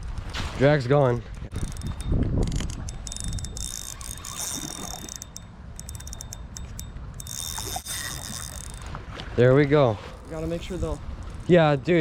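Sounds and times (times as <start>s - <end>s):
fishing reel drag ticking: 1.5s - 9.0s, 10.2s - 12.0s.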